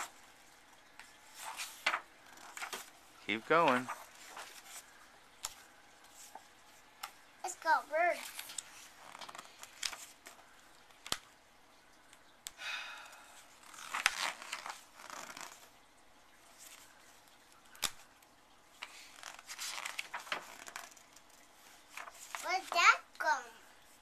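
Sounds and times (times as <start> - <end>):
paper pages rustling: 0.0 - 7.2, 8.1 - 11.3, 13.5 - 15.8, 18.8 - 22.8.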